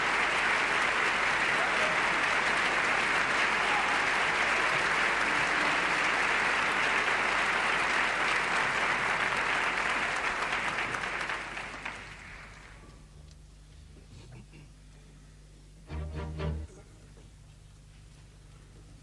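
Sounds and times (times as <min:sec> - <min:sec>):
audience applauding: 0:00.0 - 0:12.8.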